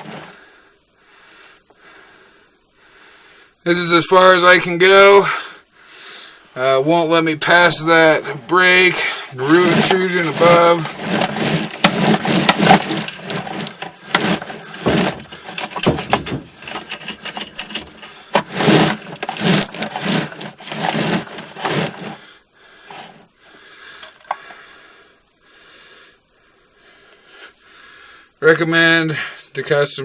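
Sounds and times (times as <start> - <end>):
camera cable scraping in pipe: 0.0 - 0.4, 7.4 - 22.2, 22.9 - 23.3.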